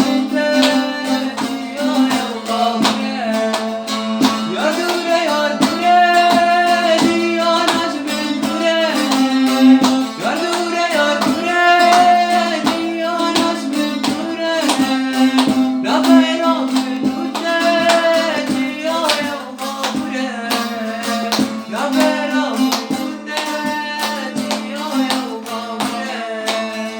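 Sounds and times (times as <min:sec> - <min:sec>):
person singing: 0:00.0 - 0:26.9
plucked strings: 0:00.0 - 0:26.9.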